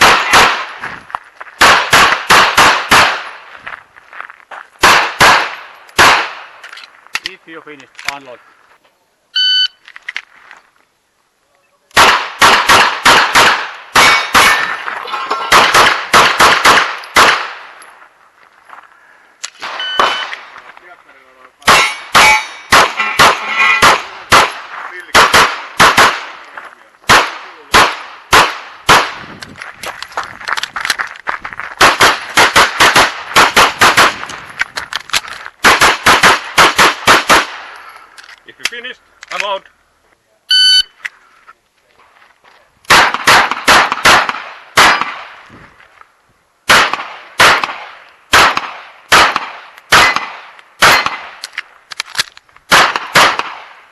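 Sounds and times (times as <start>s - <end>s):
pistol firing rapid shots: 0.0s - 0.7s, 1.6s - 3.3s, 4.8s - 6.5s, 12.0s - 14.7s, 15.5s - 17.6s, 21.7s - 26.4s, 27.1s - 29.2s, 31.8s - 34.2s, 35.6s - 37.6s, 42.9s - 45.3s, 46.7s - 51.4s, 52.7s - 53.8s
steel targets clanging: 14.0s - 15.8s, 21.6s - 24.3s.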